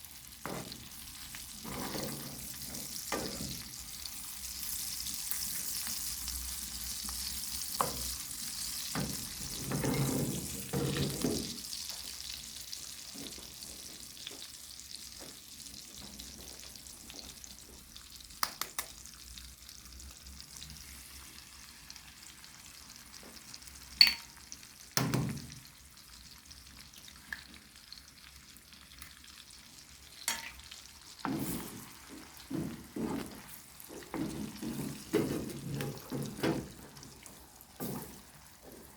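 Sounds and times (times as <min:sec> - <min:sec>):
food sizzling in a pan: 0:00.0 - 0:38.9
utensil knocking on cookware: 0:24.0 - 0:24.4.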